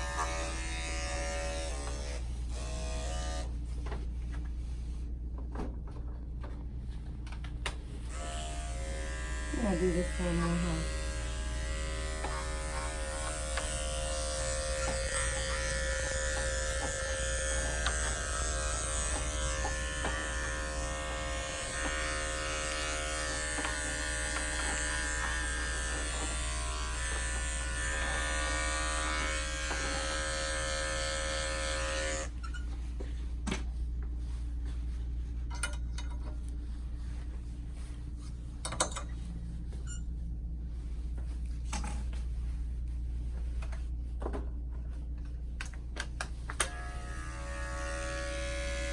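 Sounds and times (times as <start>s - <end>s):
electric dog clipper running: 0.0s - 3.5s, 8.0s - 32.4s, 46.6s - 48.9s.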